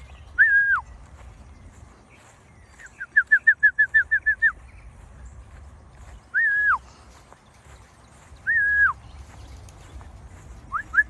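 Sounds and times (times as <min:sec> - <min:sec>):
songbird whistling: 0:00.0 - 0:01.2, 0:02.2 - 0:05.0, 0:06.3 - 0:06.8, 0:08.3 - 0:09.4, 0:10.7 - 0:11.0.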